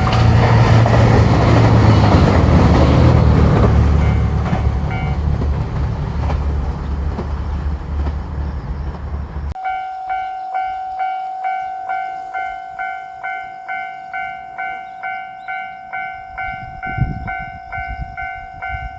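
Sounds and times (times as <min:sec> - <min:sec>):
level-crossing warning bell: 0:00.0 - 0:05.8, 0:09.5 - 0:18.9
diesel train rumbling past: 0:00.0 - 0:18.9.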